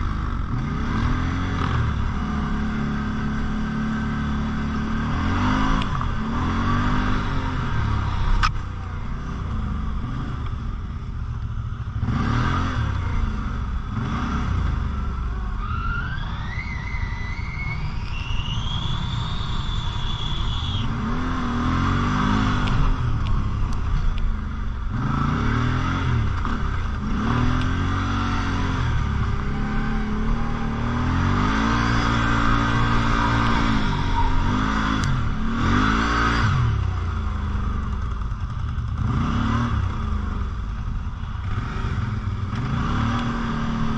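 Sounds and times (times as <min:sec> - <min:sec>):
quad bike engine revving: 0:00.0 - 0:10.6, 0:11.9 - 0:15.2, 0:16.2 - 0:43.9
thin rising whine: 0:15.6 - 0:21.1.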